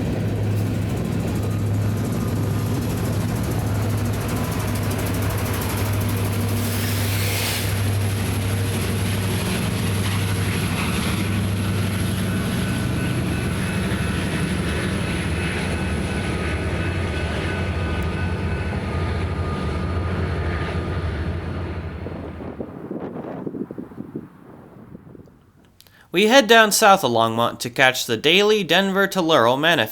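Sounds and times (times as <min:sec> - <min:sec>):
train rolling past: 0:00.0 - 0:23.9
diesel locomotive drone: 0:00.0 - 0:29.9.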